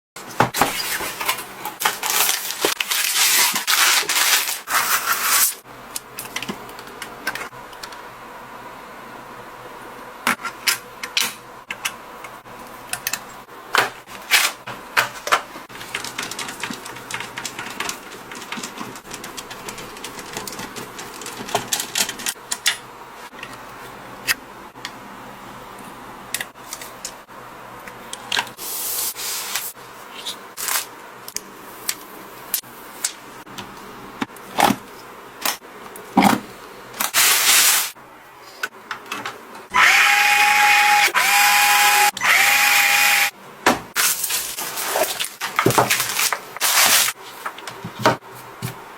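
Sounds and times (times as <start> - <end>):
rustling scrapes: 0.6 - 5.6, 44.0 - 47.6
computer parts clicking and tapping: 15.0 - 23.5.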